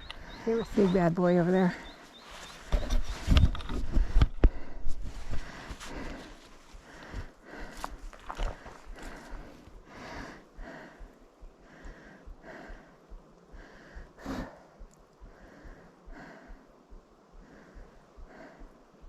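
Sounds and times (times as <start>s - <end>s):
person breathing hard: 3.8s - 19.0s.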